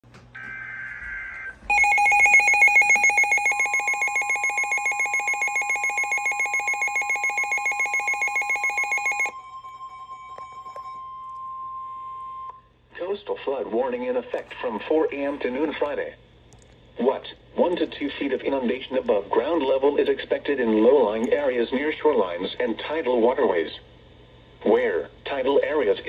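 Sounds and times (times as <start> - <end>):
pulsing warbling alarm: 0.4 - 12.5
steady high warning tone: 0.4 - 12.8
header data burst: 1.7 - 9.3.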